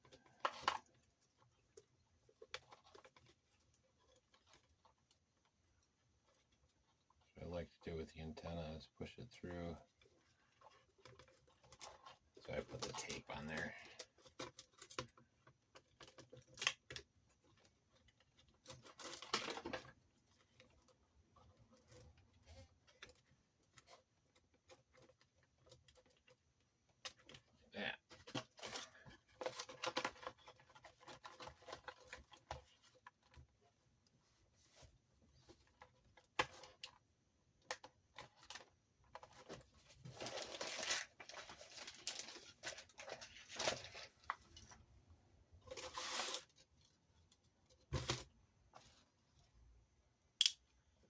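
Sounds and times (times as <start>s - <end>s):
rustling and scraping: 0.0s - 49.9s
rustling scrape: 45.6s - 47.1s
clicks of small parts handled: 50.4s - 50.7s.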